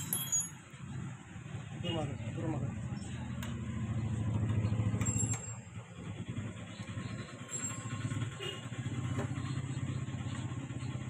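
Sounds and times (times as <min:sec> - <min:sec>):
motorcycle engine idling: 0:00.1 - 0:11.0.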